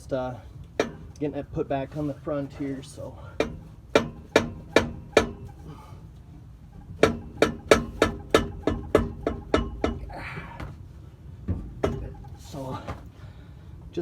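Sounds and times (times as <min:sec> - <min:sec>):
ringing metal knocks: 0:00.8 - 0:01.1, 0:03.4 - 0:05.6, 0:06.7 - 0:10.2, 0:11.5 - 0:12.6.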